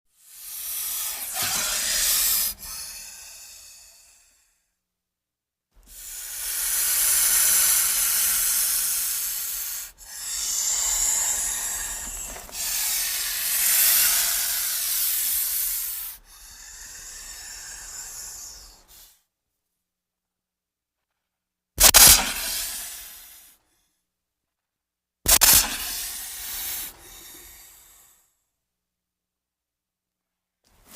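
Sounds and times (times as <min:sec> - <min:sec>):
snakes hissing and slithering: 0:00.1 - 0:04.3, 0:05.8 - 0:19.2, 0:21.8 - 0:23.5, 0:25.3 - 0:28.2.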